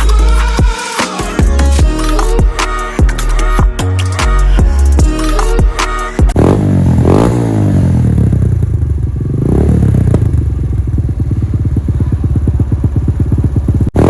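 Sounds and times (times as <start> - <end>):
motorcycle engine idling and revving: 4.9 - 14.0.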